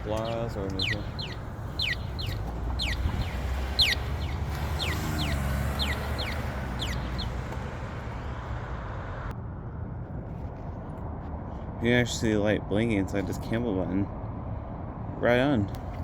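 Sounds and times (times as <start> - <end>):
crosswalk signal chirping: 0.0 - 9.3
traffic rumble: 0.0 - 16.0.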